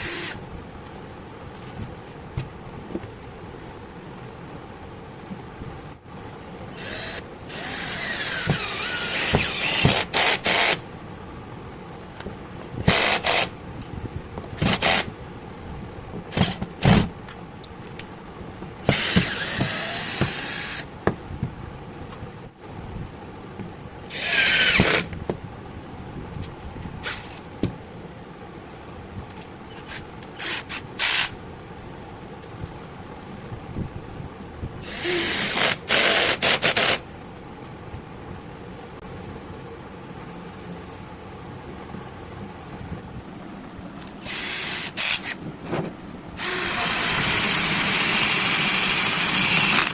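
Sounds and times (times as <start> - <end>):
cordless drill bursts: 0.0 - 0.4, 6.8 - 10.8, 12.8 - 13.5, 14.6 - 15.1, 18.8 - 20.9, 24.1 - 25.1, 29.9 - 31.4, 34.8 - 37.0, 44.2 - 45.4, 46.4 - 49.9.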